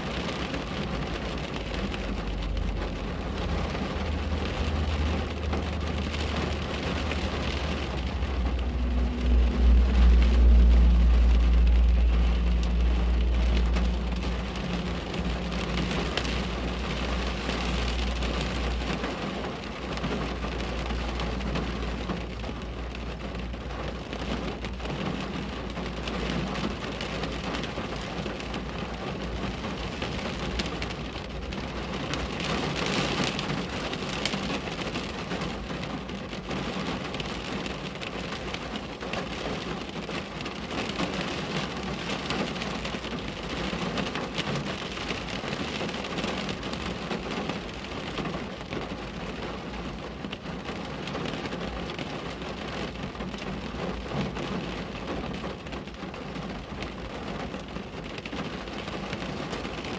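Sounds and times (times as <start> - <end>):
rain pattering on a window: 0.0 - 59.9
deep low rumble: 0.4 - 33.4.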